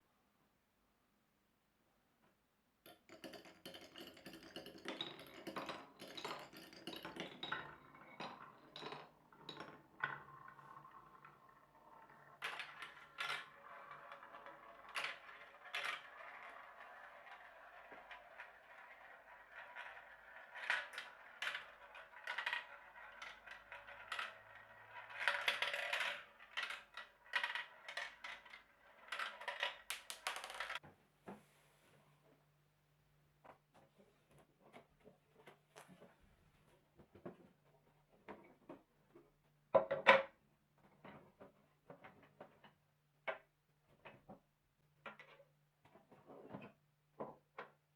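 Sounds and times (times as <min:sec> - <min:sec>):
marbles clacking: 0:02.9 - 0:30.8
marbles rolling down a track: 0:02.9 - 0:30.8.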